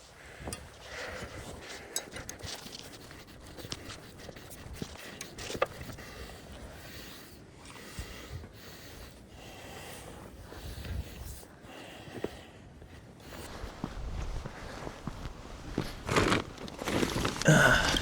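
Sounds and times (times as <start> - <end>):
footsteps scrambling on rock: 13.5 - 18.0.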